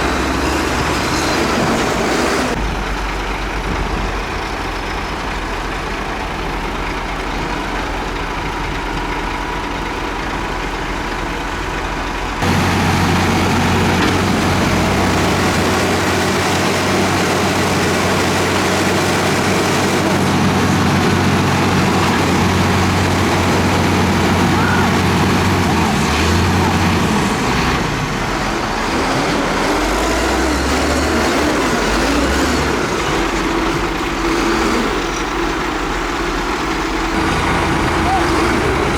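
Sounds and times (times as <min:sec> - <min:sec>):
heavy diesel engines running: 0:00.0 - 0:38.9
louder engine: 0:12.4 - 0:38.9.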